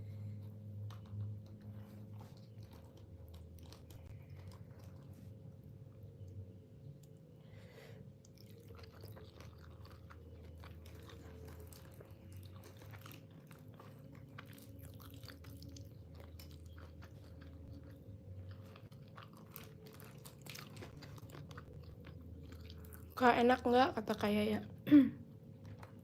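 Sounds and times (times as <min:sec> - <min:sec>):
steady low hum: 0:00.0 - 0:26.0
person chewing and crunching: 0:00.3 - 0:05.4, 0:08.2 - 0:23.2, 0:25.4 - 0:26.0.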